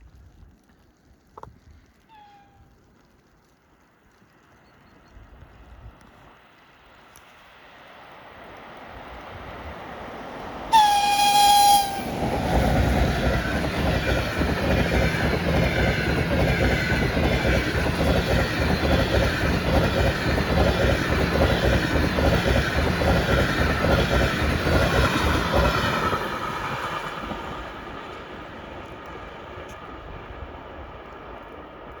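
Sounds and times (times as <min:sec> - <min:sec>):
locomotive horn blast: 0:10.7 - 0:12.4.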